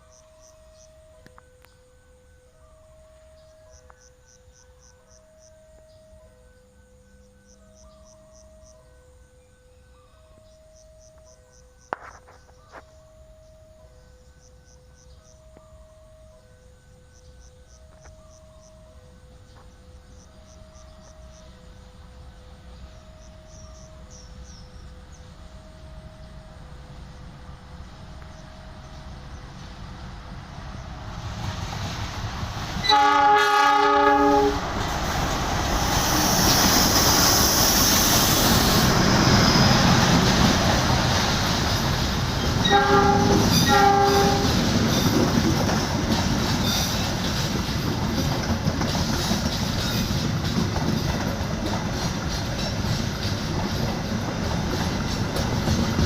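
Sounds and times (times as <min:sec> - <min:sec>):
train rumble and wheel clatter: 0:00.0 - 0:56.0
train horn blasts: 0:32.6 - 0:35.3, 0:38.2 - 0:45.3.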